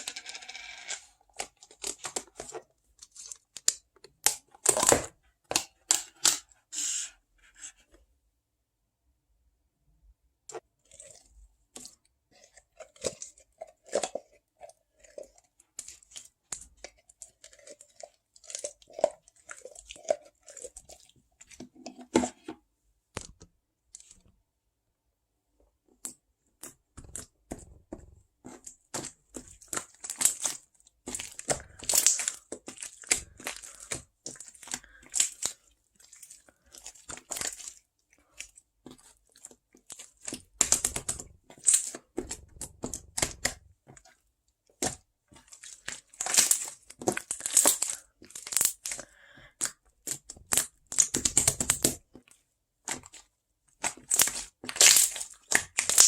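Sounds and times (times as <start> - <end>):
crinkly handling noises: 0.0 - 5.0.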